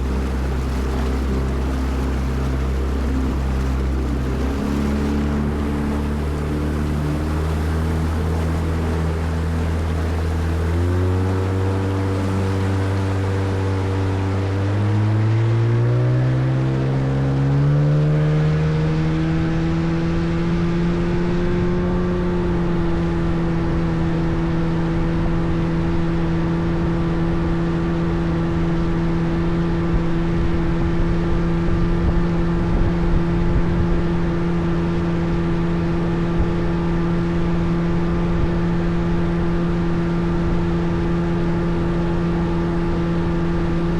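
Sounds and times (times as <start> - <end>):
even rushing noise: 0.0 - 15.3
boat motor speeding up: 0.0 - 43.9.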